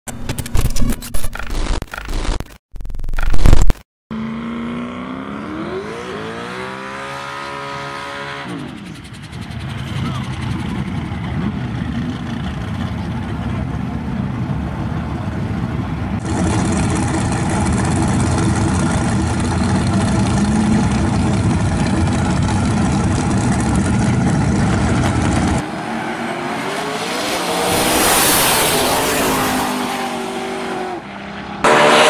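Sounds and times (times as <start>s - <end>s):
engine accelerating hard: 4.1s - 32.0s
racing car engines at high revs: 4.1s - 32.0s.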